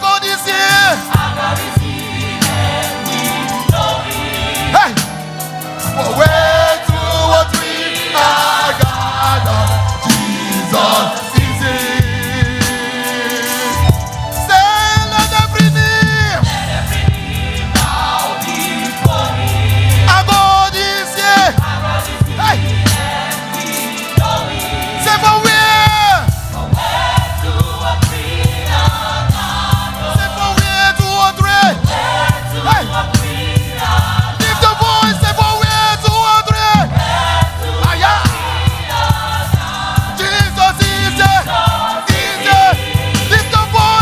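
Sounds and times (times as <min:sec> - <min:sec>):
drums: 0:00.0 - 0:44.0
gospel choir singing: 0:00.0 - 0:44.0
bass line: 0:21.6 - 0:23.2, 0:24.2 - 0:44.0.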